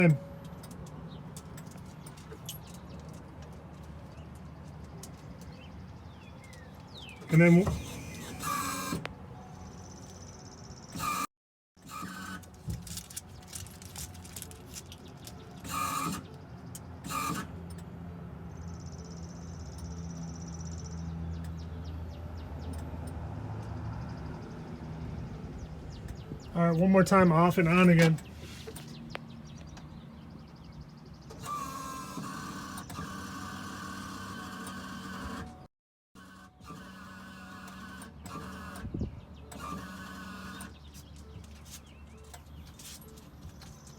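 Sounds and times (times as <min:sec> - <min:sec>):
fuel pump electric buzz: 0:07.3 - 0:09.2, 0:10.9 - 0:12.8, 0:15.6 - 0:16.3, 0:17.0 - 0:17.6, 0:31.3 - 0:35.6, 0:36.2 - 0:40.8.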